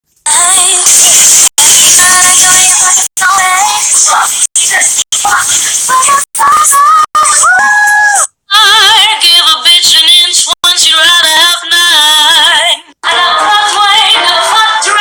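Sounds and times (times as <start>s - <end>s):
woman singing with vibrato: 0.3s - 15.0s.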